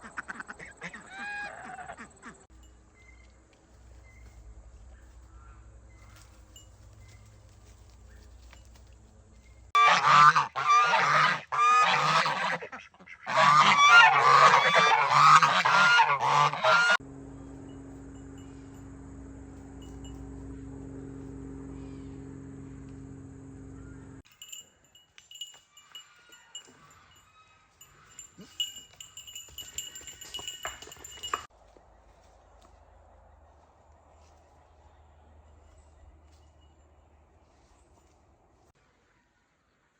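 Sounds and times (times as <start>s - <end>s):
fowl honking: 0.0s - 2.5s, 9.8s - 17.0s
low hum: 2.5s - 9.7s, 16.2s - 24.2s.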